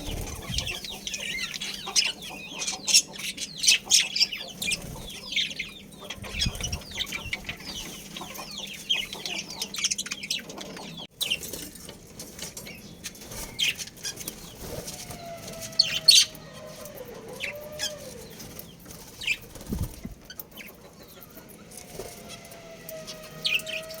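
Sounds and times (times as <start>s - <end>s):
wings fluttering: 0.0s - 1.5s, 4.6s - 5.3s, 11.3s - 24.0s
budgerigars chirping: 0.0s - 11.4s, 12.7s - 24.0s.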